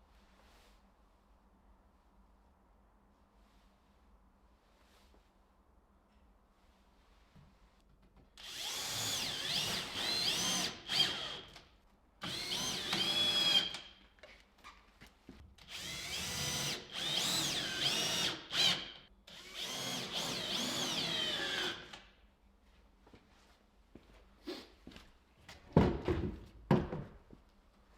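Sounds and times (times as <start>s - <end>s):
power drill motor: 8.4s - 11.6s, 12.2s - 13.9s, 15.7s - 22.0s.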